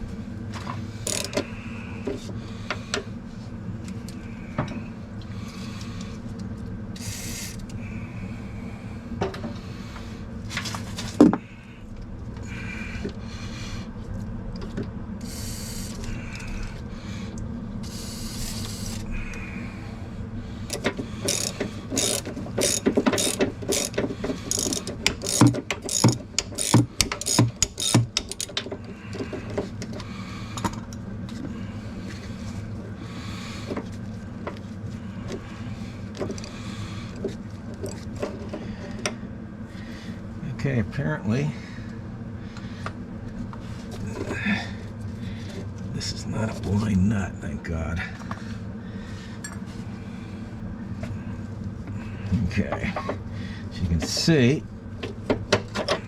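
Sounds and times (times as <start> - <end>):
steady low hum: 0.0 - 56.0
ratchet wrench clicking: 1.0 - 1.4, 7.0 - 7.7, 20.7 - 28.6
tool clatter: 20.7 - 30.0.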